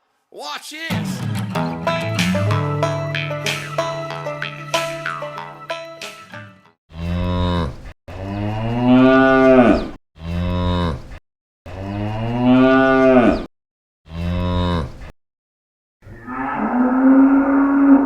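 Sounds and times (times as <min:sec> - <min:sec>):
cow mooing: 0:16.1 - 0:18.0.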